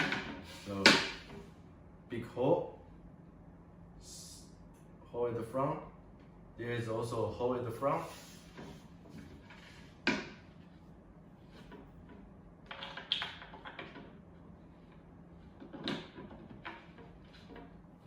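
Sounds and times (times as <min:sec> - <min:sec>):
faint steady hum: 0:00.0 - 0:18.0
wooden parts knocking and clattering: 0:11.6 - 0:14.2, 0:15.4 - 0:17.8.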